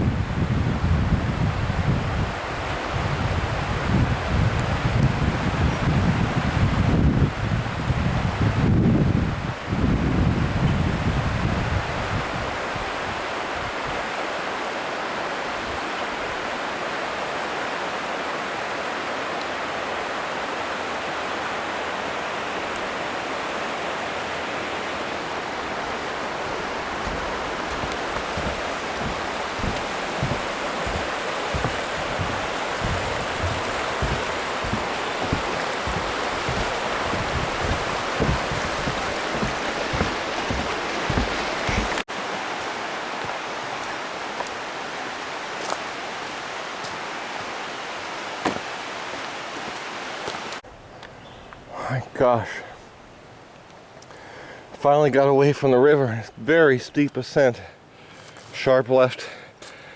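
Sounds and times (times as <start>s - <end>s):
river rushing over rocks: 12.0s - 50.6s
walking footsteps thumping: 25.8s - 42.0s, 48.4s - 50.4s.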